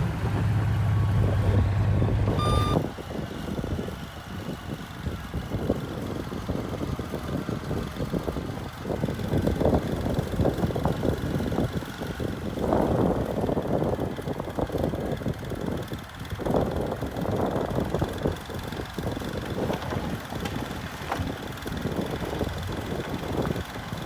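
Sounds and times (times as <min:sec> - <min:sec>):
bulldozer diesel engine: 0:00.0 - 0:24.0
clatter and crunching: 0:19.0 - 0:23.8.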